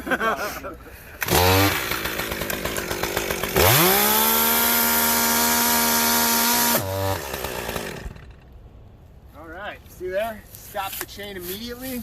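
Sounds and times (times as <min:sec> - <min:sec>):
chainsaw idling and revving: 0:01.1 - 0:08.6.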